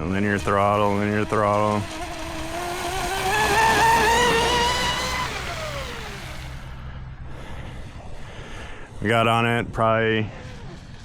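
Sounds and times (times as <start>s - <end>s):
electric boat motor whining: 0.0s - 7.2s.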